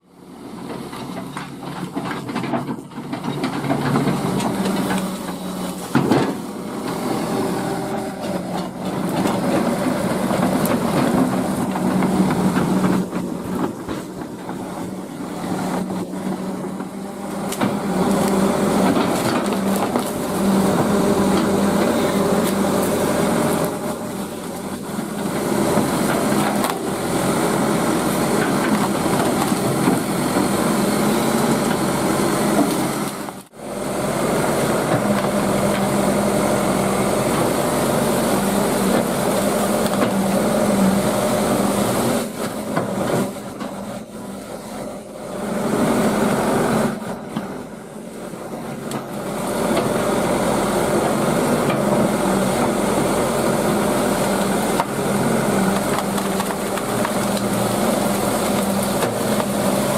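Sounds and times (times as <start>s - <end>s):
excavator diesel engine running: 0.0s - 59.9s
wood and brush cracking: 8.2s - 30.6s, 53.5s - 59.9s.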